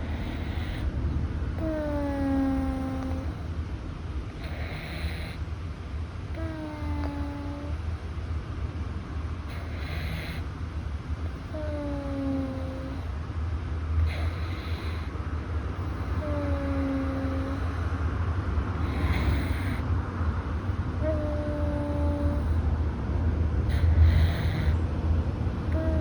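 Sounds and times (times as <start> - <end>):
cat breathing whistles: 23.7 - 24.8.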